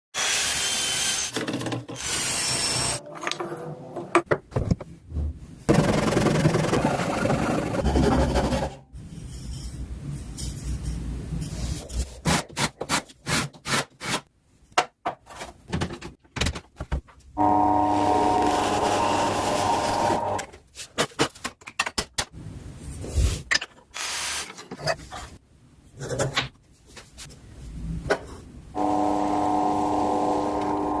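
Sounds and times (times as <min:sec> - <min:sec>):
tool scraping wood: 0:05.7 - 0:08.9
power tool running: 0:17.4 - 0:20.4, 0:28.8 - 0:31.0.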